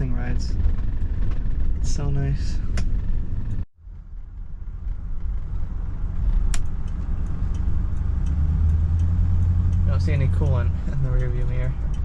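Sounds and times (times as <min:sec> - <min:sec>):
car engine and road rumble: 0:00.0 - 0:12.0
sharp click: 0:02.7 - 0:03.0, 0:06.5 - 0:08.4.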